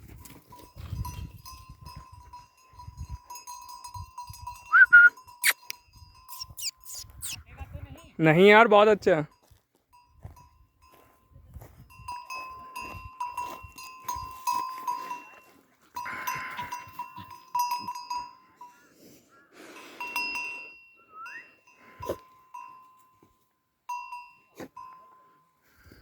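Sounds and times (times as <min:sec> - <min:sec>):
small metal bell jingling: 0:00.0 - 0:08.1, 0:09.2 - 0:18.5.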